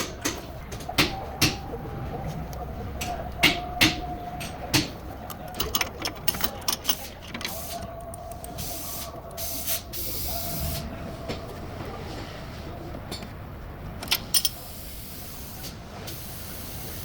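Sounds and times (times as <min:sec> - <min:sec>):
faint steady whine: 0:00.4 - 0:17.0
hand tools clicking and knocking: 0:02.5 - 0:09.6, 0:14.0 - 0:14.7.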